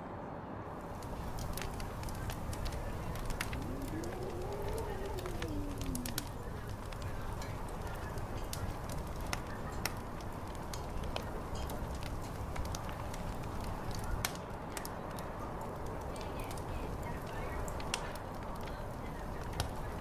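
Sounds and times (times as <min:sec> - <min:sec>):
steady low rumble: 0:00.8 - 0:14.3
fire crackling and popping: 0:00.8 - 0:20.0.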